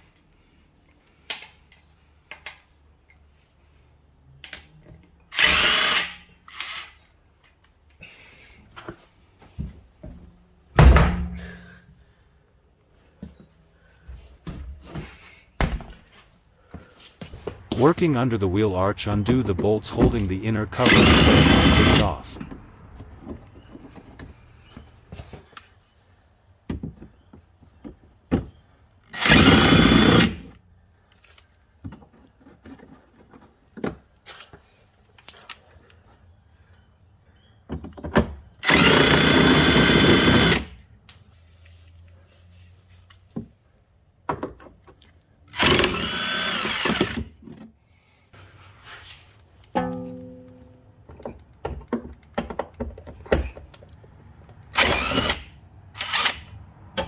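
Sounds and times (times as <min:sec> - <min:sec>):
clicks and knocks of handling bolts: 0:01.2 - 0:03.3
cordless drill whining: 0:20.8 - 0:22.1, 0:29.2 - 0:30.5, 0:38.6 - 0:40.7, 0:45.5 - 0:47.3, 0:54.8 - 0:56.5.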